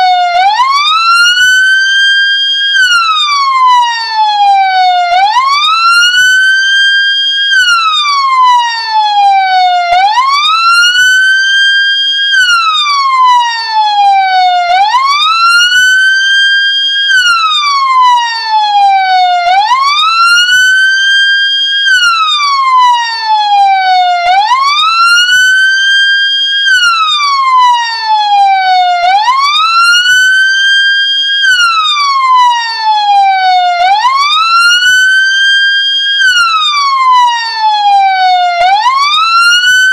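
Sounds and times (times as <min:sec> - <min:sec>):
ambulance siren wailing: 0:00.0 - 0:39.9.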